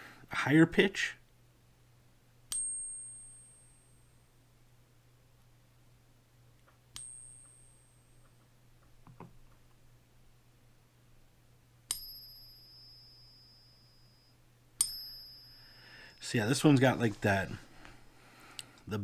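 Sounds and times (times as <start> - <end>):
coin ringing when struck: 11.9 - 15.8.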